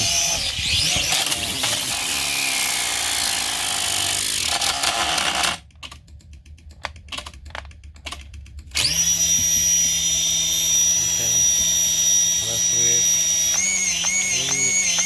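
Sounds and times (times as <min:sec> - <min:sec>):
toy drone propellers whining: 0:00.0 - 0:05.6, 0:08.8 - 0:15.0
knocks and clicks: 0:04.4 - 0:08.6.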